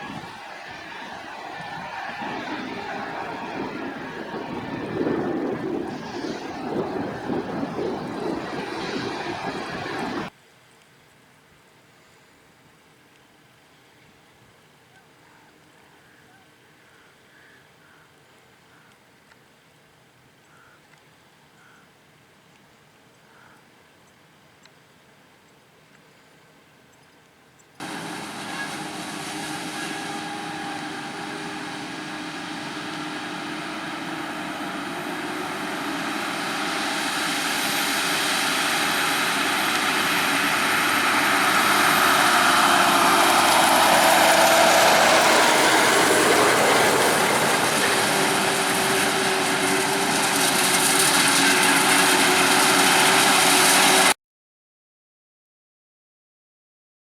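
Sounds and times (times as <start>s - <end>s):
heavy diesel machinery running: 27.8s - 54.2s.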